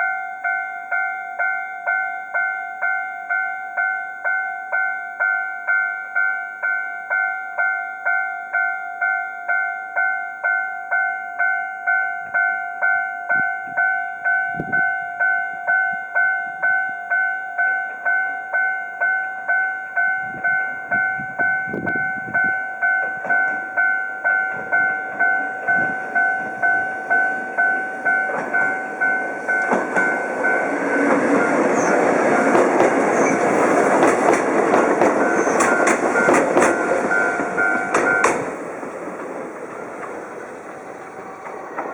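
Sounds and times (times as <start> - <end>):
level crossing alarm ringing: 0.0 - 41.9
train rumbling and clattering: 12.2 - 19.1, 19.9 - 41.9.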